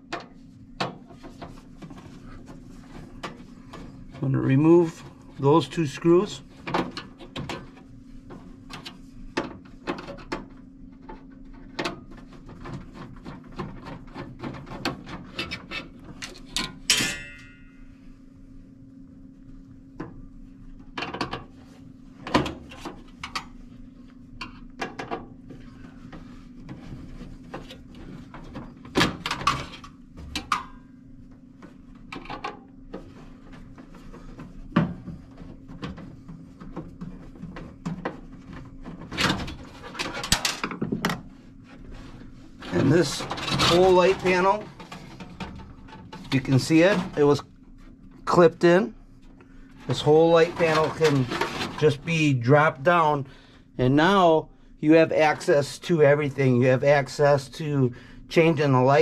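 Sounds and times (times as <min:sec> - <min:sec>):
steady low hum: 0:00.0 - 0:59.0
short metallic ring: 0:16.9 - 0:17.9.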